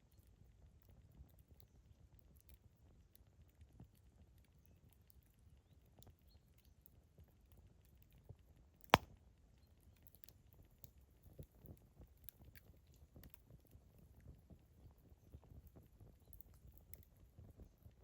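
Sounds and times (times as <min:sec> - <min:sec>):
sharp pop of fire: 0:08.9 - 0:09.1.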